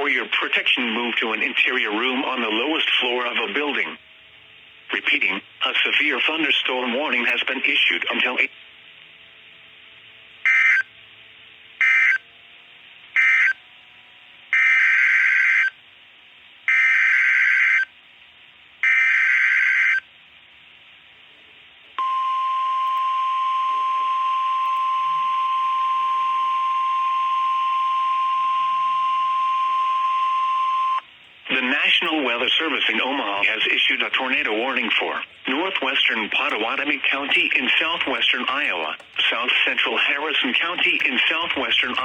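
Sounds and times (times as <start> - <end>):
steady warning alarm tone: 10.4 - 10.9, 11.8 - 12.3, 13.2 - 13.8, 14.5 - 15.8, 16.7 - 17.9, 18.8 - 20.1, 22.0 - 31.1.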